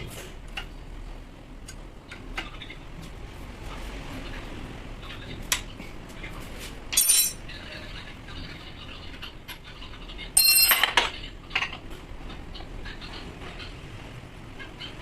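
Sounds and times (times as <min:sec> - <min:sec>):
ringing metallic clink: 0:07.0 - 0:07.4, 0:10.4 - 0:11.0.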